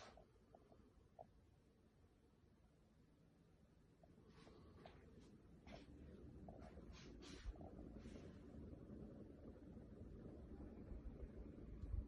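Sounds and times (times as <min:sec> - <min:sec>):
soft rustles: 0:04.2 - 0:08.6.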